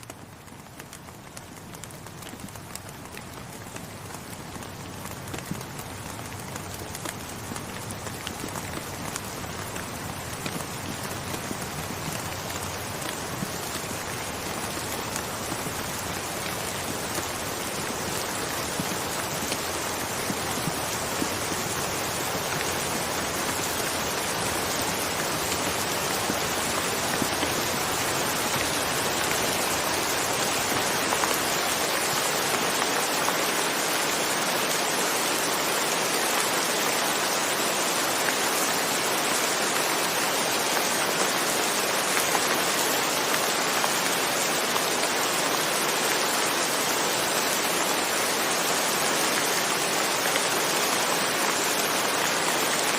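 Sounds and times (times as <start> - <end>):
steady rain falling: 0.0 - 52.9.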